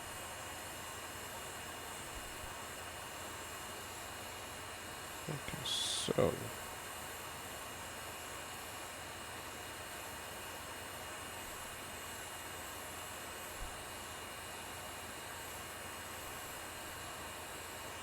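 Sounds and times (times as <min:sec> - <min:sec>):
faint high-pitched whine: 0:05.3 - 0:06.6
steady hiss: 0:05.3 - 0:06.6.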